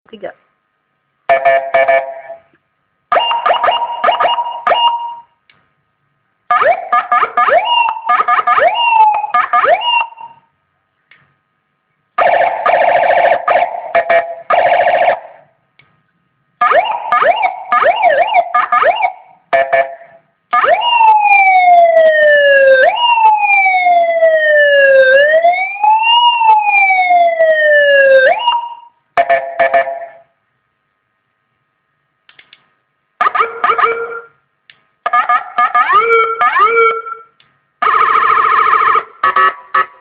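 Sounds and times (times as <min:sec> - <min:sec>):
siren wail: 0:03.1 - 0:05.3, 0:06.5 - 0:10.5, 0:12.2 - 0:15.4, 0:16.6 - 0:20.0, 0:20.6 - 0:30.3, 0:33.2 - 0:34.4, 0:35.1 - 0:40.0
electronic siren yelping chirps: 0:03.1 - 0:05.4, 0:06.5 - 0:10.4, 0:16.6 - 0:30.2, 0:33.2 - 0:34.4, 0:35.1 - 0:40.0.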